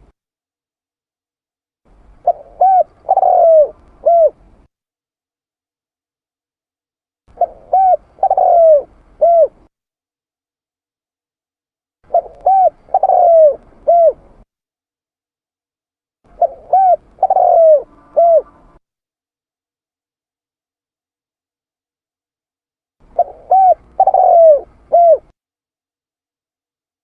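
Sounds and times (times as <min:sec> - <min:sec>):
dove cooing: 0:02.2 - 0:04.4, 0:07.3 - 0:09.7, 0:12.1 - 0:14.4, 0:16.3 - 0:18.8, 0:23.0 - 0:25.3.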